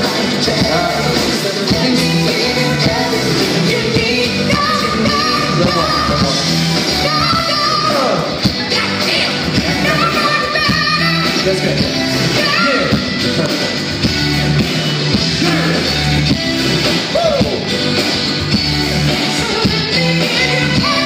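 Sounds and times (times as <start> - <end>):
person singing live: 0.0 - 14.1, 18.8 - 21.0
pop backing track over pa: 0.0 - 21.0.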